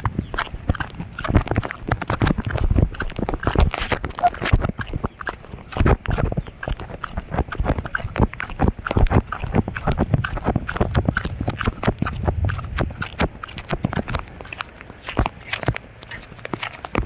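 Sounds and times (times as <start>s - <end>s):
low wind-like rumble: 4.6s - 16.6s
microphone knocking: 10.0s - 14.2s.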